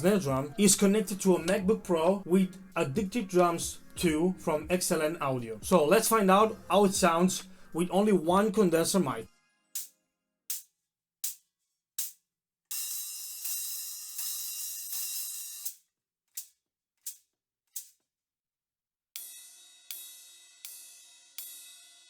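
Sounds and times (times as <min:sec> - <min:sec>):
cymbal strokes: 0:00.0 - 0:09.1, 0:12.7 - 0:15.8, 0:19.2 - 0:22.0.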